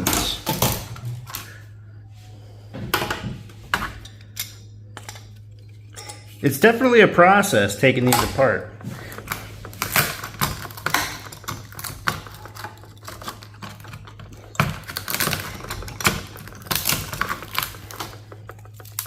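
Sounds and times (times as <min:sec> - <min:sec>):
hand tools clicking and snapping: 0:00.0 - 0:01.6, 0:08.0 - 0:19.0.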